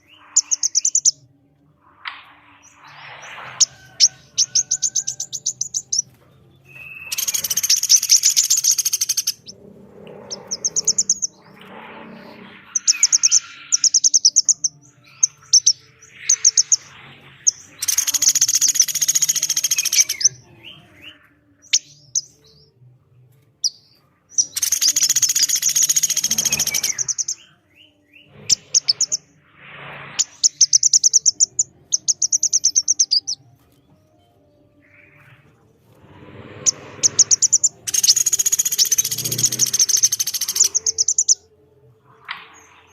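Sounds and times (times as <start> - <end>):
high trilled bird notes: 0.0 - 1.2, 2.6 - 22.1, 36.7 - 41.4
woodpecker calling: 6.7 - 9.5, 10.2 - 11.4, 17.8 - 20.3, 24.4 - 27.4, 37.1 - 41.4
bird calling: 6.7 - 11.4, 36.7 - 41.4.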